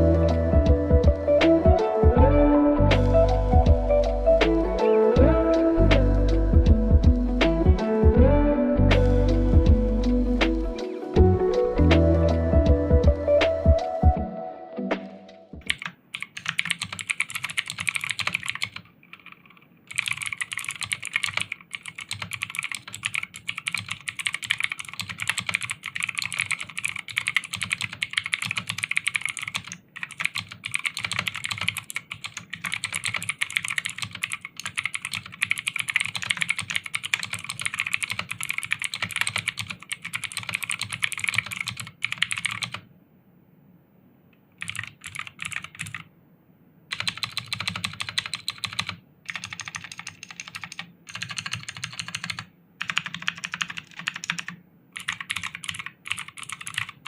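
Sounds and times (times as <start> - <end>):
clicky mechanical keyboard typing: 15.6 - 42.9, 44.6 - 46.1, 46.9 - 57.0.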